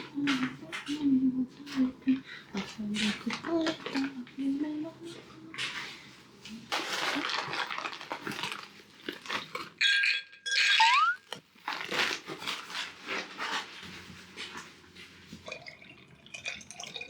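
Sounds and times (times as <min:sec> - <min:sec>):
dog chewing and crunching: 0:02.5 - 0:09.8, 0:11.2 - 0:17.0
high-pitched rising sound: 0:10.8 - 0:11.2.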